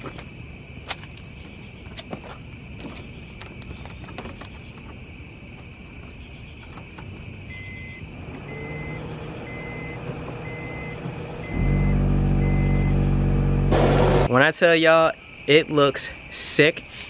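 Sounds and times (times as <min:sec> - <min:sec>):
crickets chirping: 0:00.0 - 0:17.0
electronic beep: 0:07.5 - 0:14.3
low hum: 0:09.6 - 0:14.3.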